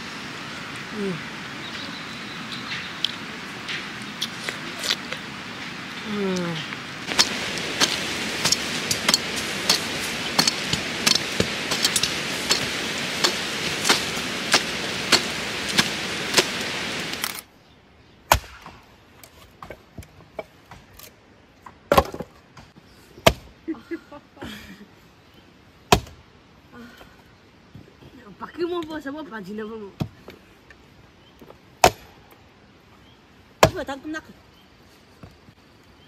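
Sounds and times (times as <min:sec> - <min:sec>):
steady rushing noise: 0:00.0 - 0:17.4.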